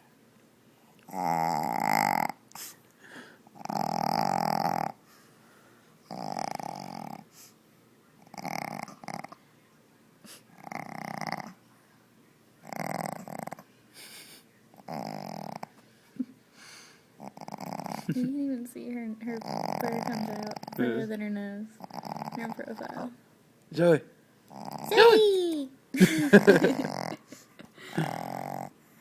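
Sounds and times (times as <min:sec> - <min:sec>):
dog snoring: 0:01.0 - 0:02.5, 0:03.6 - 0:05.0, 0:06.1 - 0:07.3, 0:08.2 - 0:09.4, 0:10.6 - 0:11.6, 0:12.6 - 0:13.7, 0:14.8 - 0:15.7, 0:17.2 - 0:18.2, 0:19.2 - 0:21.2, 0:21.8 - 0:23.1, 0:24.5 - 0:25.1, 0:26.3 - 0:27.2, 0:27.9 - 0:28.8.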